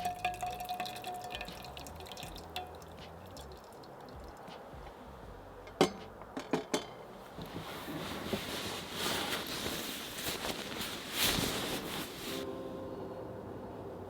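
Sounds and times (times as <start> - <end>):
rustling and scraping: 7.1 - 12.4.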